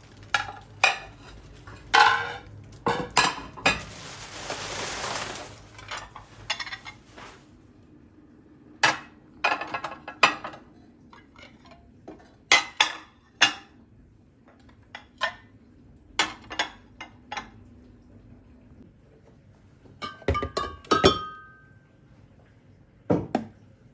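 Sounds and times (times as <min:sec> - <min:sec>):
dishes and cutlery clinking: 0:00.4 - 0:04.0, 0:20.0 - 0:21.7.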